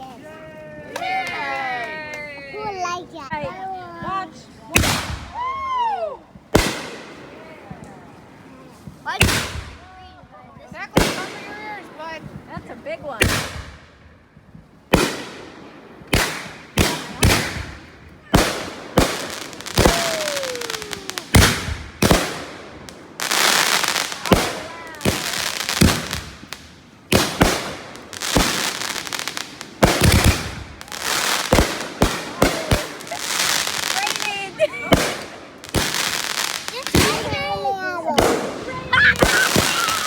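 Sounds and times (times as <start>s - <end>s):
fireworks bangs: 4.0s - 5.8s, 6.4s - 40.0s
dense firework hiss: 15.1s - 40.0s
falling firework whistle: 19.7s - 21.6s, 39.1s - 40.0s.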